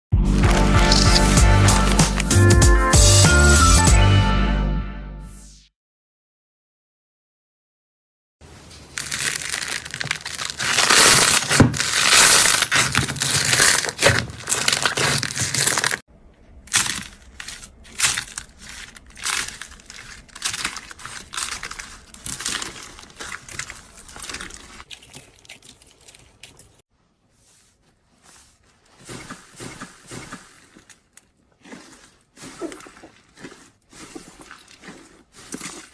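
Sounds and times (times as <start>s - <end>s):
slime crackling and popping: 8.8s - 16.0s, 16.7s - 25.6s.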